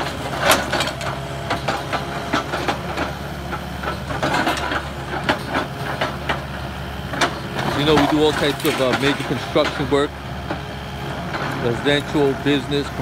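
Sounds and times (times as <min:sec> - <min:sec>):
demolition machine engine running: 0:00.0 - 0:13.0
debris knocks and crunches: 0:07.2 - 0:09.8.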